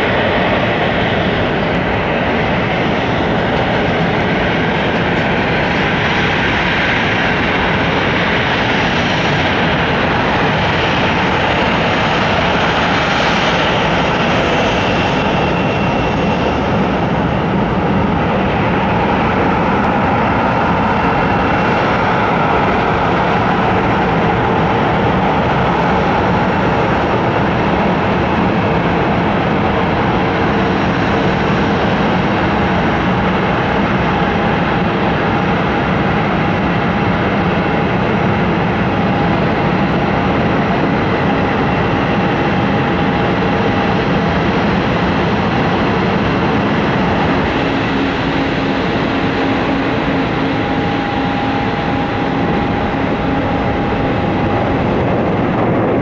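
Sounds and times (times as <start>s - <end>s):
jet engines idling: 0.0s - 56.0s
faint engine whine: 38.7s - 56.0s.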